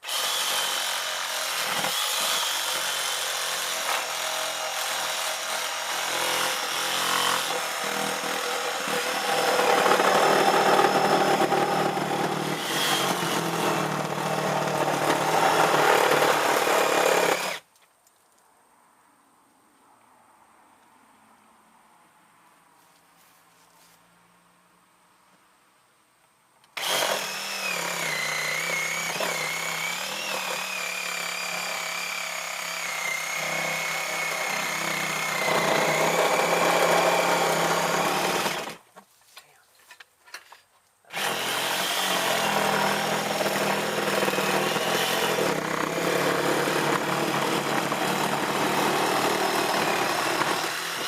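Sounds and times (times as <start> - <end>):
electric power saw cutting: 0.0 - 17.6, 26.8 - 38.8, 41.1 - 51.0.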